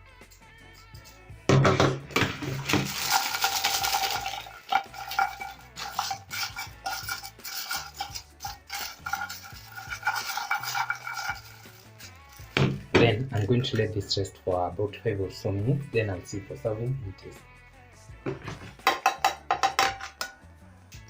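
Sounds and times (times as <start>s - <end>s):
utensil clinking and scraping dish: 2.2s - 14.1s, 18.3s - 20.4s.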